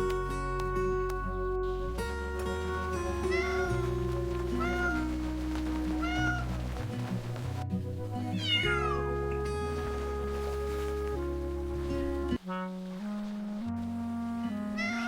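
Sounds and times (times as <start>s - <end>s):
gentle background music: 0.0s - 15.0s
cat meowing: 3.3s - 3.9s, 4.5s - 5.1s, 6.0s - 6.5s, 8.4s - 9.0s, 14.8s - 15.0s.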